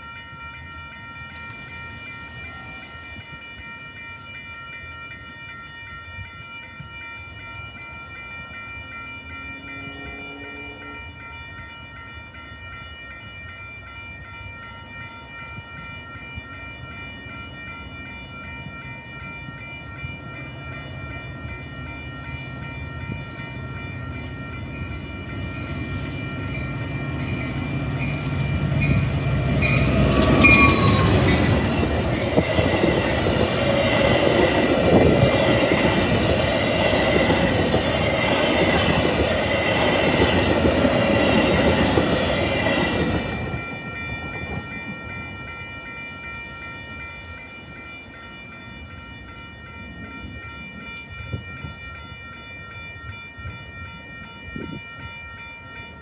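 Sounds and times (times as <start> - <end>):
steady high ringing tones: 0.0 - 56.0
train passing at speed: 9.2 - 11.1, 20.2 - 48.2
rattle of train cars: 25.3 - 45.4.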